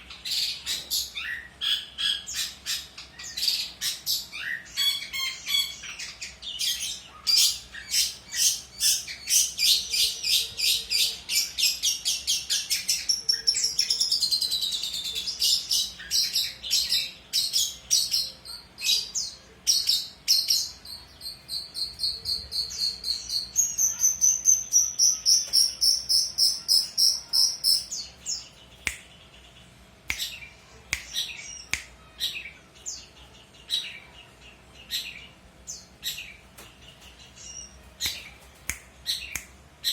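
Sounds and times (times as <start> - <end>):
shrike singing: 1.1 - 29.4.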